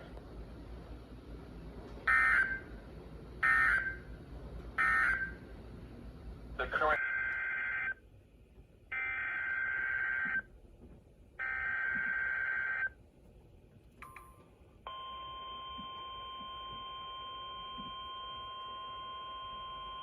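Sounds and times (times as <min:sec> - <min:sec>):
steady alarm tone: 0:03.4 - 0:04.1, 0:04.8 - 0:05.4, 0:14.9 - 0:20.0.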